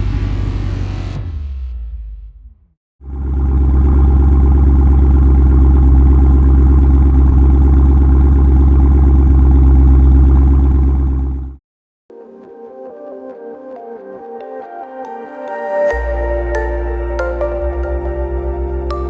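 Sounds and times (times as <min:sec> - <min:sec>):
car engine running steadily: 0:00.0 - 0:11.6.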